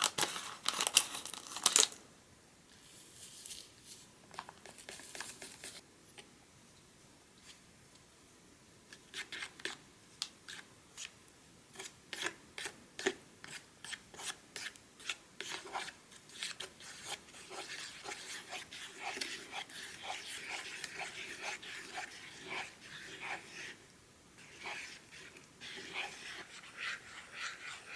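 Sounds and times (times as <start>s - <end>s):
plastic spoon scraping plastic tray: 24.4s - 27.9s.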